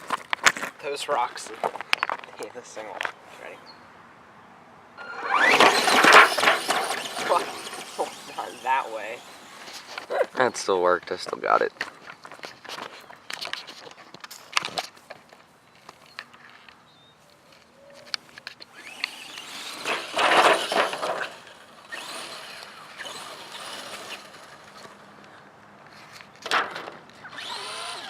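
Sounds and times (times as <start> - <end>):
toy truck crunching over rocks: 5.0 - 15.0, 18.1 - 25.2, 25.9 - 28.0.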